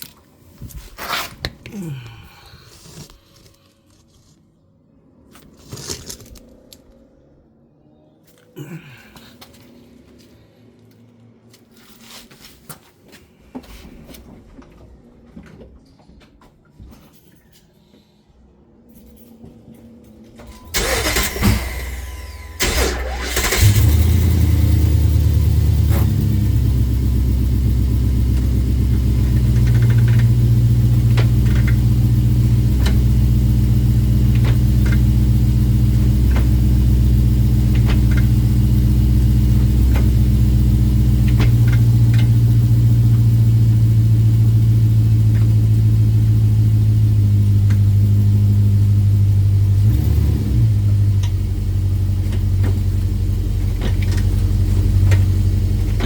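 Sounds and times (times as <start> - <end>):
car engine starting and idling: 20.4 - 56.0.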